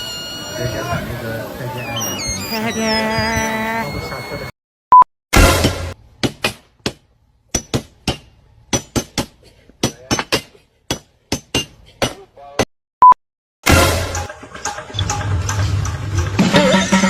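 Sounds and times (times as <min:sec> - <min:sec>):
short beep: 0:00.0 - 0:05.1.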